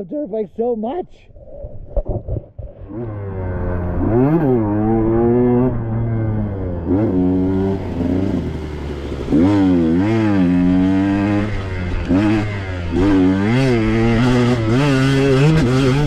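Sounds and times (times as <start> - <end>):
dirt bike engine revving: 2.8 - 16.0.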